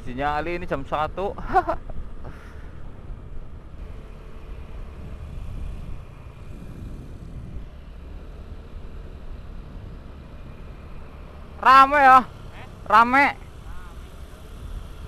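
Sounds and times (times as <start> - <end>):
motorcycle engine rumble: 0.0 - 15.0
wind noise on microphone: 4.7 - 8.0.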